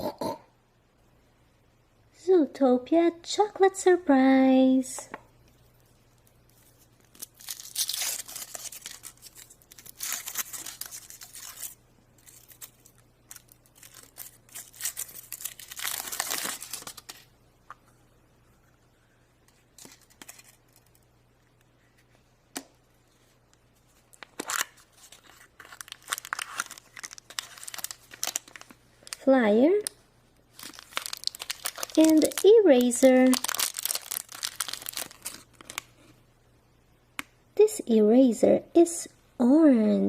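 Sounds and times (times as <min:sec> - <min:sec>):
wrapper tearing and crinkling: 0:06.5 - 0:17.3, 0:19.8 - 0:21.0, 0:24.1 - 0:29.3, 0:30.5 - 0:35.9.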